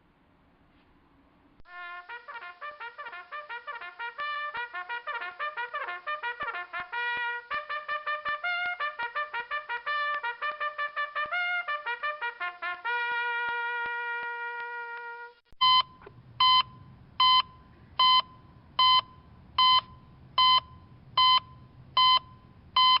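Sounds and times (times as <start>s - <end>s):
fast trumpet-like melody: 1.7s - 15.5s.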